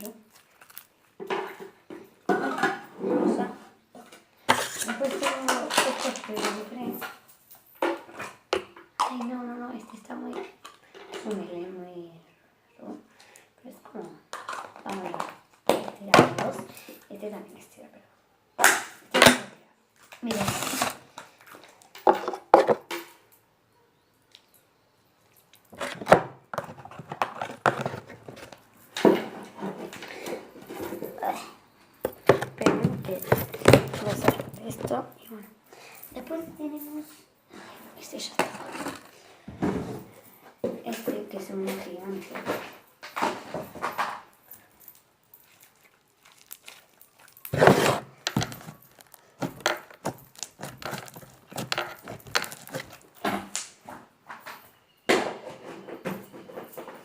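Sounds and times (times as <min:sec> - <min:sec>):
slime squelching: 0:45.5 - 0:53.2
slime squelching and clicking: 0:45.6 - 0:47.6.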